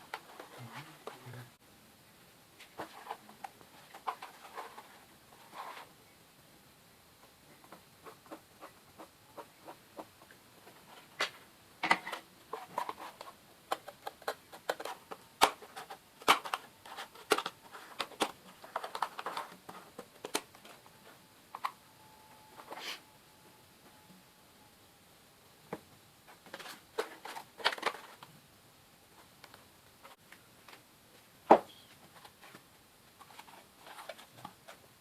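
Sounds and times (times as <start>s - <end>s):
scrapes and rustles: 2.6s - 6.0s, 30.0s - 34.9s.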